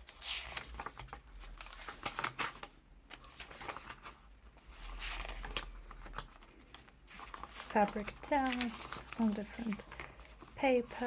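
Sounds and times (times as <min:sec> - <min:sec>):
soft paper rustle: 0:00.0 - 0:11.0
papery clicks and taps: 0:05.2 - 0:10.5.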